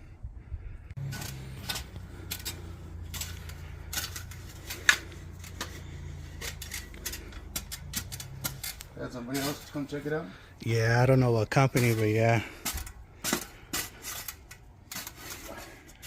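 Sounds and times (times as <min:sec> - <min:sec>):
steady low hum: 0:00.0 - 0:10.6.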